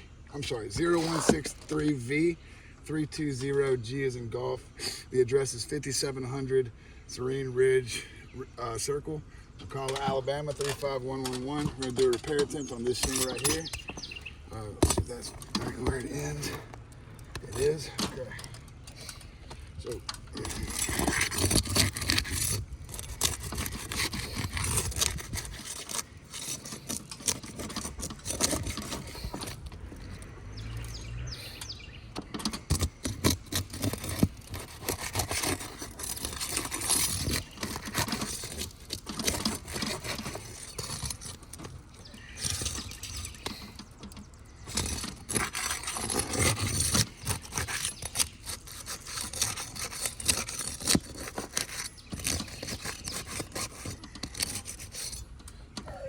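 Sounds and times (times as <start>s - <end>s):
scraping on roof shingles: 0.4s - 1.8s, 9.3s - 55.9s.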